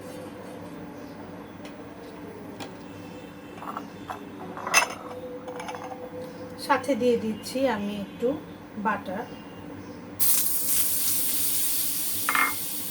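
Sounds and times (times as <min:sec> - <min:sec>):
utensils clinking on cookware: 0:03.6 - 0:06.0, 0:12.2 - 0:12.8.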